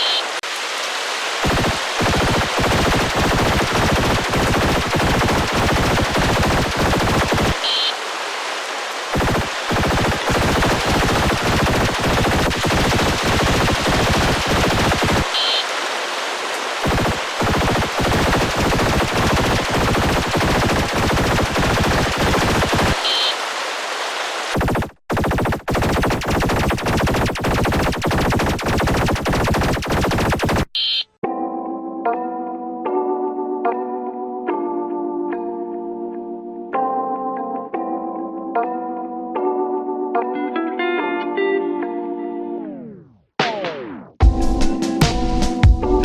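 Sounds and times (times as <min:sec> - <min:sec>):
emergency alert alarm pulses: 0:00.0 - 0:00.4, 0:01.4 - 0:08.0, 0:09.1 - 0:15.8, 0:16.8 - 0:23.4, 0:24.5 - 0:31.2.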